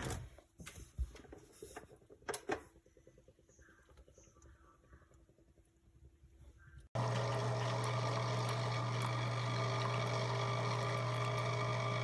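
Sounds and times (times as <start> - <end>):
coffee maker pump humming: 6.9 - 12.0
water moving through machine: 7.0 - 12.0.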